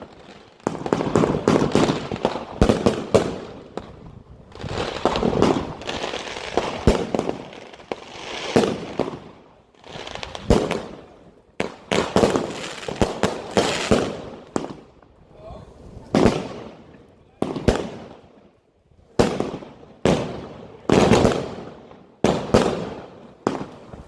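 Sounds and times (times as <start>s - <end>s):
firework crackle: 0.0s - 18.4s, 19.1s - 24.0s
firework launch shots: 0.7s - 9.3s.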